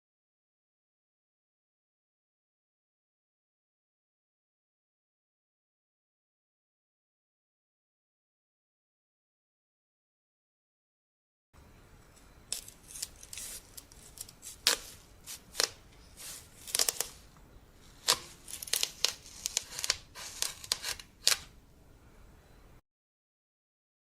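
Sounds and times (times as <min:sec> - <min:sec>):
knife cracking watermelon rind: 0:12.5 - 0:17.2, 0:17.9 - 0:21.5.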